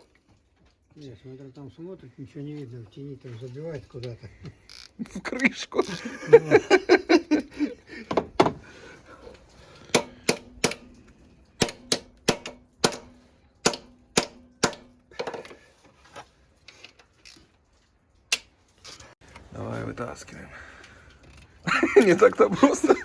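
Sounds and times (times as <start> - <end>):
knocks on metal valve cover: 8.1 - 8.6, 9.9 - 10.9, 11.6 - 15.0.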